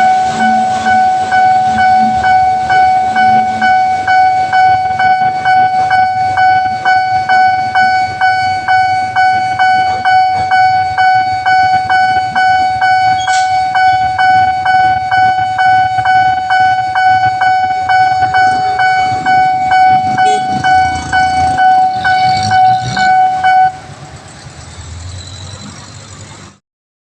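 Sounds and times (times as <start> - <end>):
level crossing warning alarm: 0.0 - 26.5
low rumble: 14.0 - 25.0.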